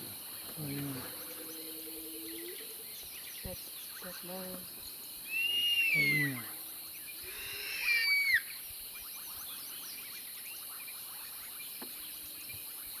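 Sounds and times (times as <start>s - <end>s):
crickets and insects chirping: 0.0s - 13.0s
whistled call falling in pitch: 5.3s - 6.5s, 7.4s - 8.5s.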